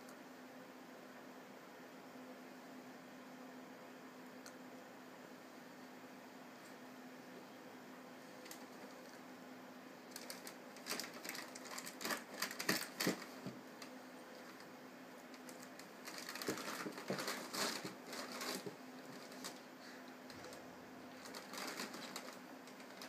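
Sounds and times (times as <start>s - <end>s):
steady low hum: 0.0s - 23.0s
plastic bag crinkling: 10.1s - 14.7s, 15.3s - 19.7s, 20.3s - 23.0s.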